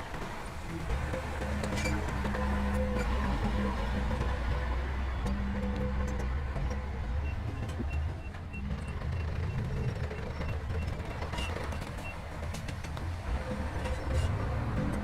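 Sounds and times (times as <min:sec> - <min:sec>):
diesel machine engine rumbling: 0:00.0 - 0:15.0
reversing alarm beeping: 0:01.4 - 0:12.2.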